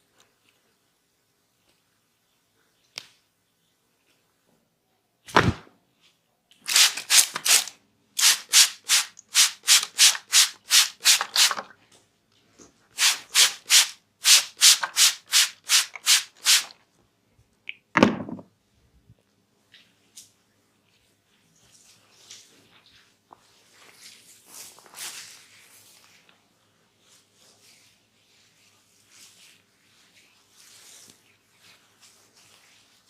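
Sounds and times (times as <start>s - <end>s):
hands rubbing briskly: 6.7s - 11.6s, 13.0s - 16.7s.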